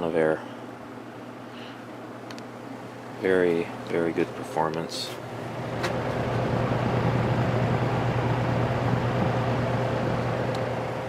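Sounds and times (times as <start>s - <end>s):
fan motor hum: 0.0s - 11.0s
air rushing from fan blades: 2.9s - 11.0s.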